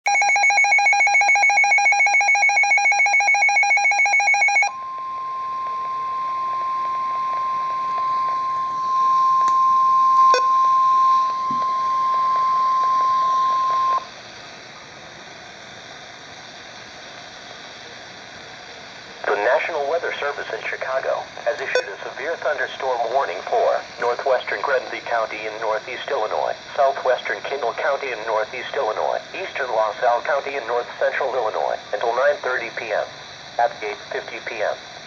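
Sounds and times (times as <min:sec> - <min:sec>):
rapid electronic alarm beeping: 0:00.1 - 0:14.1, 0:21.6 - 0:22.0
steady alarm tone: 0:00.1 - 0:14.1, 0:21.1 - 0:25.3
low radio hiss: 0:04.7 - 0:35.0.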